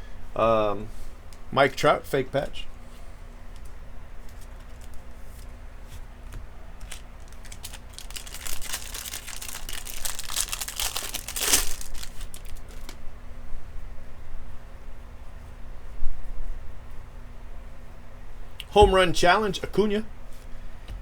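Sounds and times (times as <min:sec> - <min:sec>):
foil wrapper tearing and crinkling: 0:04.4 - 0:05.1, 0:06.8 - 0:13.0.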